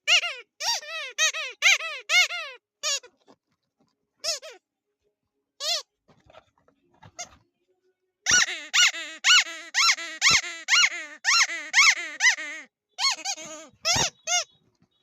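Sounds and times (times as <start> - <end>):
duck toy squeaking: 0.0 - 3.2, 4.2 - 4.6, 5.6 - 5.9, 8.2 - 14.6.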